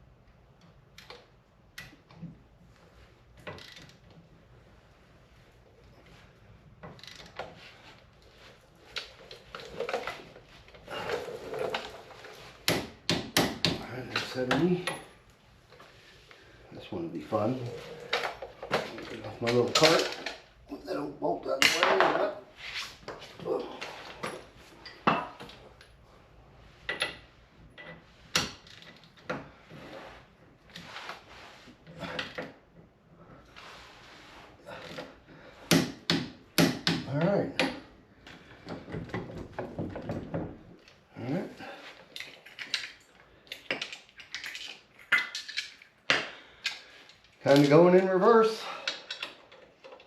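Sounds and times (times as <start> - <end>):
tools and parts handled: 6.8 - 12.7, 17.3 - 20.5, 41.9 - 50.0
metal tools clinking: 18.0 - 20.4.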